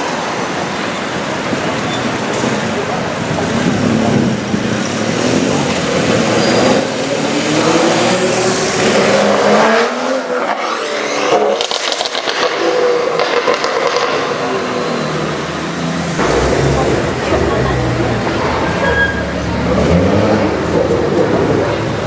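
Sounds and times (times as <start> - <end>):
car engine accelerating: 3.4 - 22.0
exhaust crackles and pops: 11.5 - 14.2, 16.2 - 18.6.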